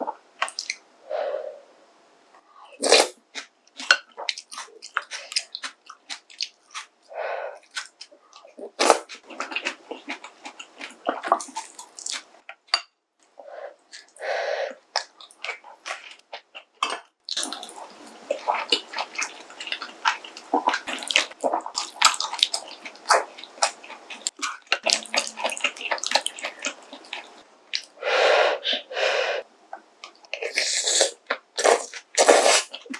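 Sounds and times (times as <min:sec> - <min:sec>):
chewing: 0:02.9 - 0:12.9, 0:13.9 - 0:27.9
slurping noodles and broth: 0:30.4 - 0:32.8.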